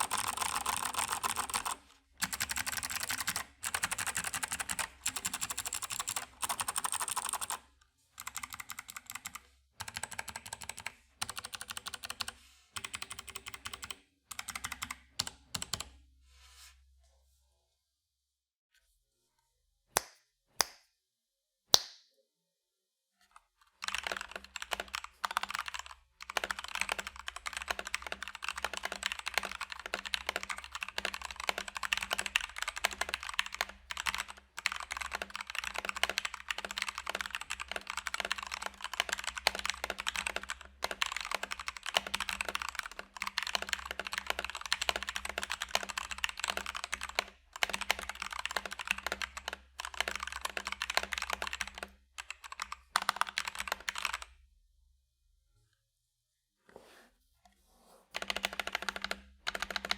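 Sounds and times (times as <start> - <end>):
mechanical keyboard typing: 0.0 - 7.6, 8.2 - 15.9, 23.6 - 54.3, 58.2 - 59.9.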